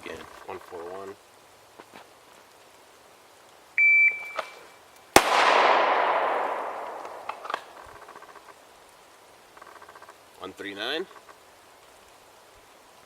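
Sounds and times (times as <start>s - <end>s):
shot timer beep: 3.8s - 4.6s
pistol shot echoing: 5.2s - 7.8s
faint clicks: 6.7s - 12.7s.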